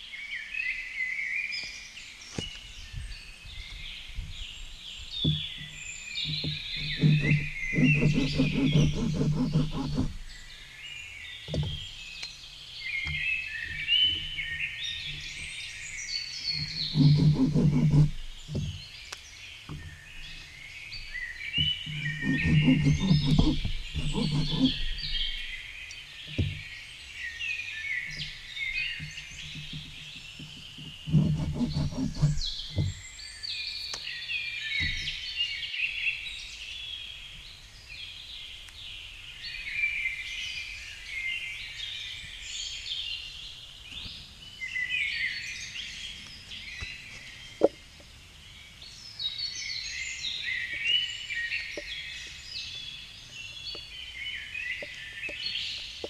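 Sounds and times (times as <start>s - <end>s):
songbirds singing: 0.0s - 56.0s.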